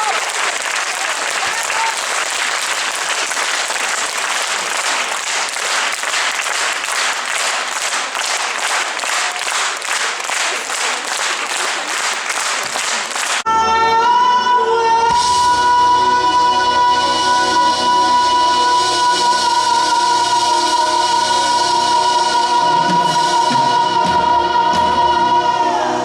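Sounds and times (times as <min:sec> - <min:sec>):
audience applauding: 0:00.0 - 0:13.4.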